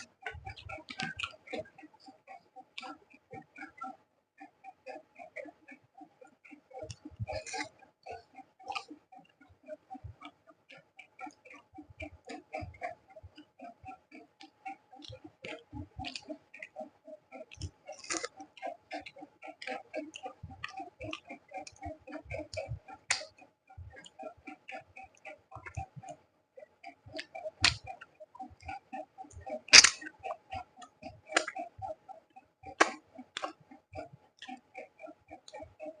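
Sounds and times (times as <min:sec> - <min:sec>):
close chewing: 0:17.4 - 0:23.3, 0:28.6 - 0:30.1
wet mouth clicks and smacks: 0:17.5 - 0:20.0, 0:20.6 - 0:23.4, 0:27.1 - 0:28.8, 0:29.4 - 0:30.1, 0:31.3 - 0:31.7, 0:32.8 - 0:33.6.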